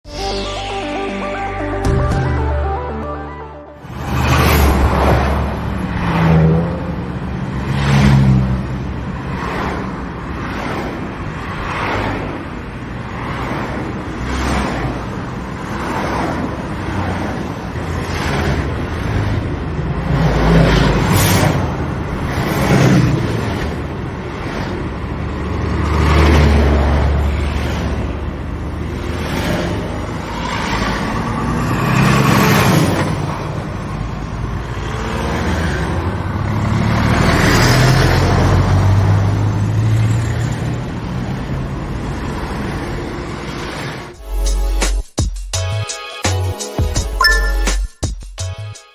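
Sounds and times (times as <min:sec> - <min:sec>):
deep rumble of vehicles: 0:03.8 - 0:44.2
vehicles passing close by: 0:03.8 - 0:44.2.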